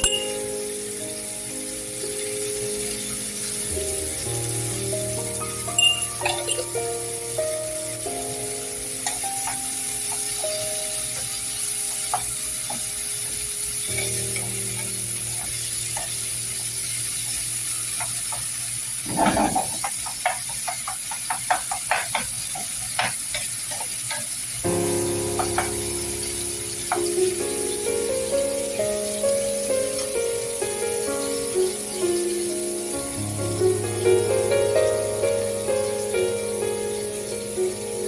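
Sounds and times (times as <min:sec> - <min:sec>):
background music: 0:00.0 - 0:16.8, 0:24.7 - 0:38.0
food sizzling in a frying pan: 0:00.0 - 0:38.0
utensil scraping and tapping pan: 0:19.1 - 0:24.4.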